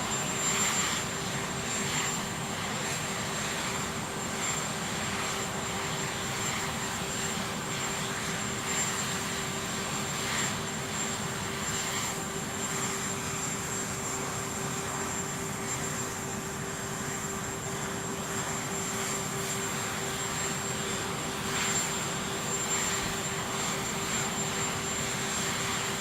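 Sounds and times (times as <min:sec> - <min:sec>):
aircraft engines running: 0:00.0 - 0:26.0.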